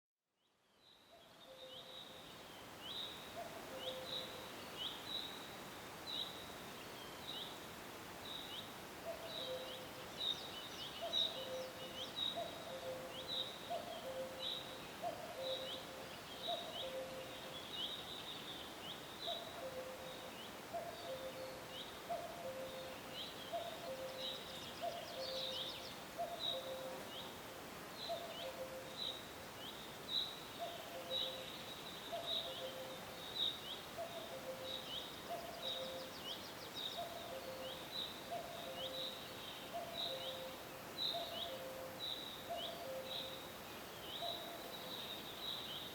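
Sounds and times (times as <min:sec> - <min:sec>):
songbird chirping: 0:00.3 - 0:45.9
forest hiss: 0:00.6 - 0:45.9
cuckoo calling: 0:03.4 - 0:04.4, 0:09.0 - 0:10.0, 0:11.0 - 0:17.5, 0:19.3 - 0:27.1, 0:28.1 - 0:29.0, 0:30.6 - 0:33.1, 0:34.0 - 0:36.2, 0:37.0 - 0:43.4.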